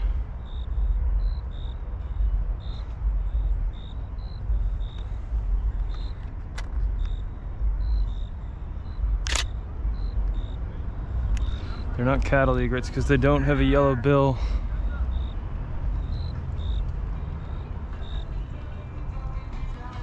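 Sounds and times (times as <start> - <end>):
wind rumbling on microphone: 0.0 - 13.8
camera shutter clicks: 9.2 - 9.6.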